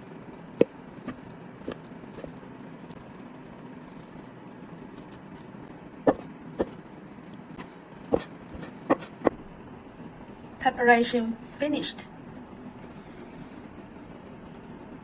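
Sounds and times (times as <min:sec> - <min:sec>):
steady low hiss: 0:00.0 - 0:15.0
knife chopping on cutting board: 0:06.0 - 0:06.8, 0:08.0 - 0:09.4.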